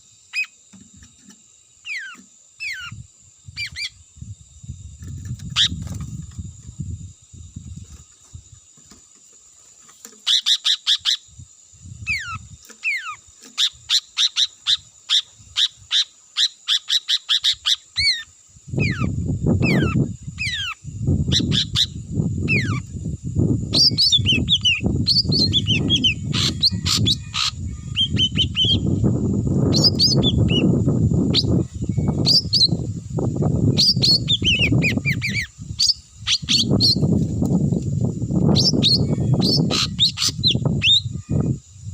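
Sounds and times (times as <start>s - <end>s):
bird chirps and whistles: 1.8s - 3.0s, 12.0s - 22.9s, 23.7s - 29.0s, 29.7s - 30.7s, 31.3s - 32.8s, 33.7s - 37.1s, 38.5s - 41.5s.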